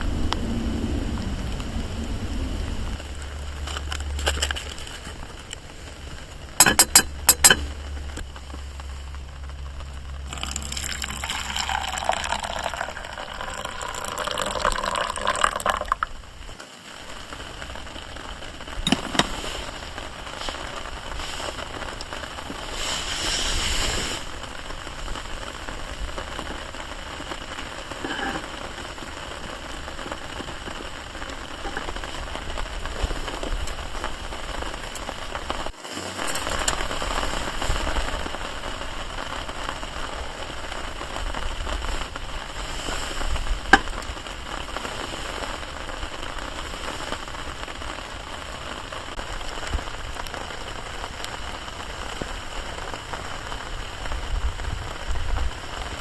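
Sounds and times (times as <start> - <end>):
rain pattering on a tarp: 0.0 - 56.0
liquid pouring into a vessel: 10.3 - 16.1.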